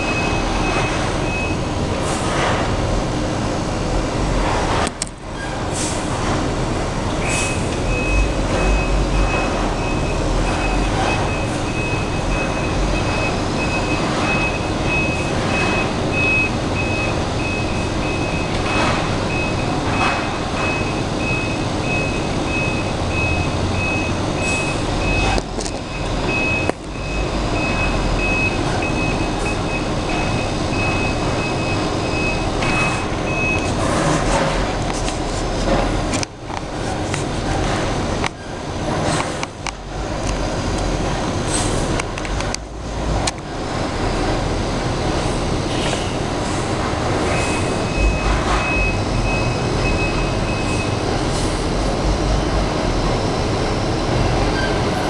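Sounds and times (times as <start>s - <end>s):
reversing alarm beeping: 0.0s - 1.8s, 7.4s - 33.8s, 47.3s - 51.5s
truck engine running: 0.0s - 55.0s.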